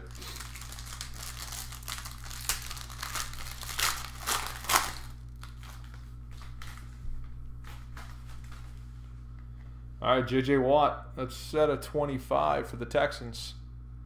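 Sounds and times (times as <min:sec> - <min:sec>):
card packs crinkling and rustling: 0:00.0 - 0:06.9
steady low hum: 0:00.0 - 0:14.0.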